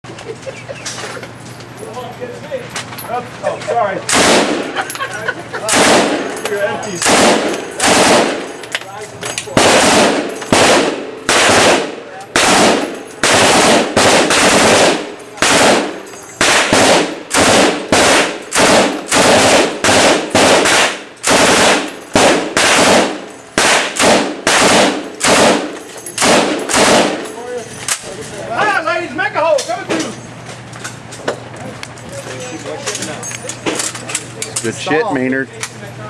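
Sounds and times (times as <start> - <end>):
machine gun bursts: 4.1 - 4.8, 5.7 - 8.6, 9.5 - 27.3.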